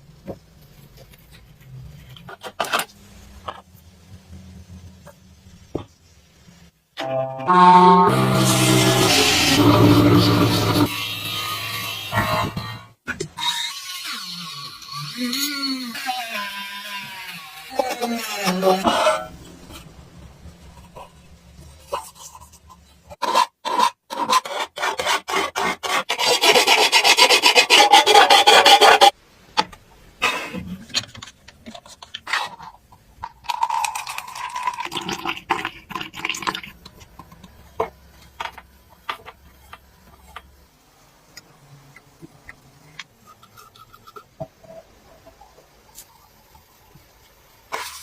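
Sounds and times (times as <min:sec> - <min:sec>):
hand tool scraping: 0:21.7 - 0:29.2.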